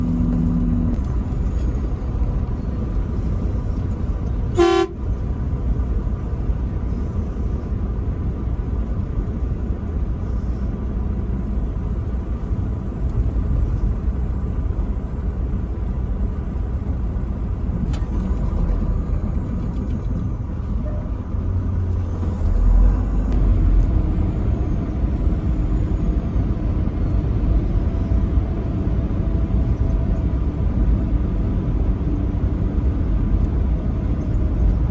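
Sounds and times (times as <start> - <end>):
truck engine and road rumble: 0.0 - 34.9
truck horn blast: 4.5 - 5.1.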